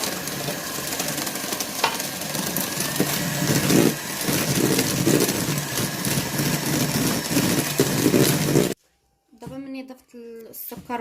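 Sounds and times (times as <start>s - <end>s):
electric mixer whisking: 0.0s - 8.8s.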